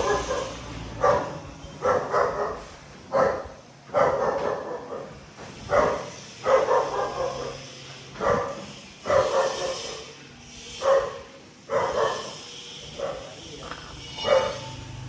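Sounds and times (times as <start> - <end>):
dog barking: 0.0 - 10.1, 10.8 - 13.4, 14.2 - 14.7.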